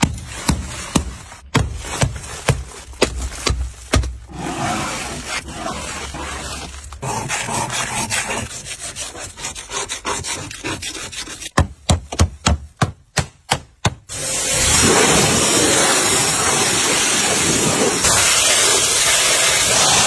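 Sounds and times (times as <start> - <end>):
hand tool rasping over surface: 0.0 - 11.6
sharp knocks: 11.6 - 14.1.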